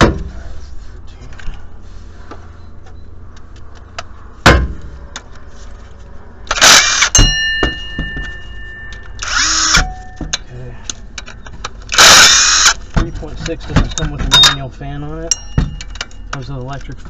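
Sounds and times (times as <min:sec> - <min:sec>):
cordless impact tool burst: 0:06.5 - 0:07.2, 0:09.2 - 0:09.9, 0:11.9 - 0:12.8
metal tools clinking on engine: 0:06.5 - 0:17.0.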